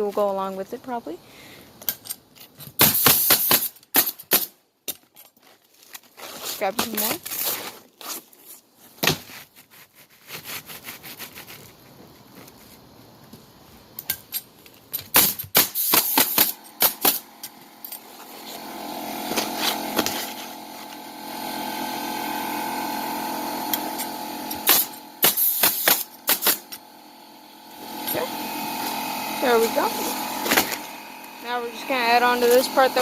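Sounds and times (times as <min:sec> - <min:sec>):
nail gun firing: 0:02.8 - 0:04.6, 0:15.0 - 0:17.3, 0:23.7 - 0:26.9
steady mechanical hum: 0:11.6 - 0:33.0.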